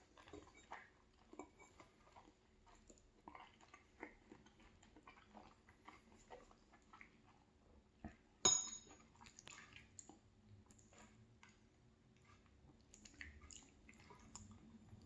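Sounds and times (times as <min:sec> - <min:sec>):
chewing and wet mouth sounds: 0:00.0 - 0:15.0
cutlery clinking against bowl: 0:08.4 - 0:09.0.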